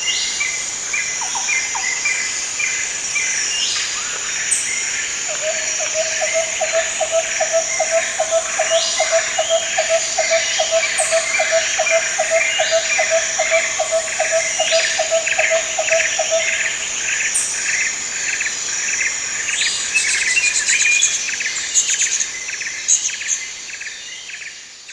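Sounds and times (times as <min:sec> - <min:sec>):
insect drone: 0:00.0 - 0:24.9
birds calling and chirping: 0:05.6 - 0:17.6.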